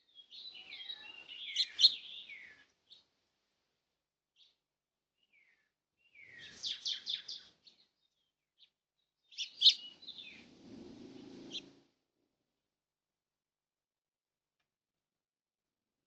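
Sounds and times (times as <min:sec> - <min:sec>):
bird chirping: 0:00.0 - 0:03.1, 0:05.2 - 0:10.5.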